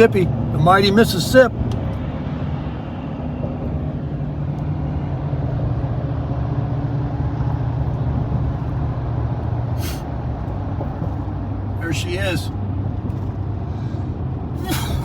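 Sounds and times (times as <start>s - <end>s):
car road and engine noise: 0.0s - 15.0s
brief hiss: 9.8s - 10.1s.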